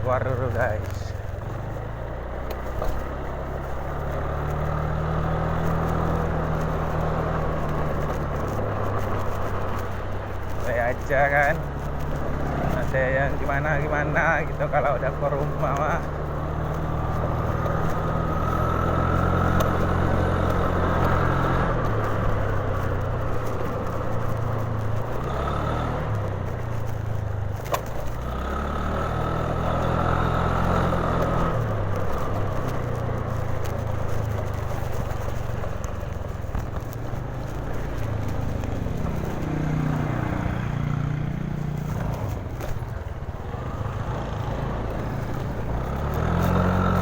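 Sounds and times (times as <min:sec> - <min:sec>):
scooter engine running: 0:00.0 - 0:47.0.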